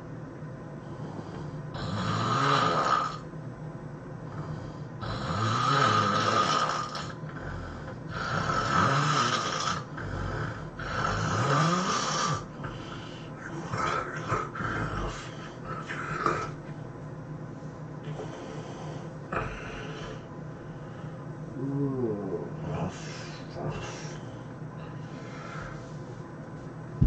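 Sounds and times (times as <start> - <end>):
irregular snorts: 0.9 - 3.2, 4.3 - 16.6, 18.0 - 26.0
person snoring heavily: 0.9 - 3.2, 4.3 - 16.6, 18.1 - 20.3, 21.6 - 24.3.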